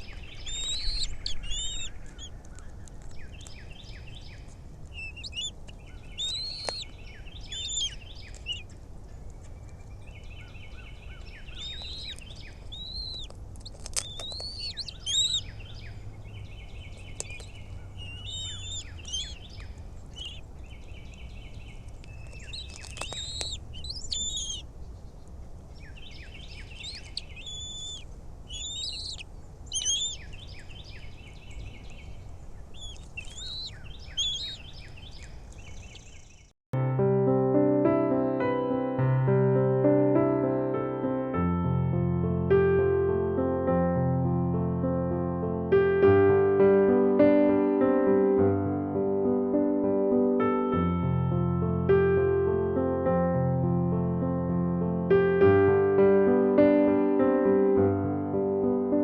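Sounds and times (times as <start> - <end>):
faint low rumble: 0.0 - 36.1
birds chirping: 0.0 - 36.5.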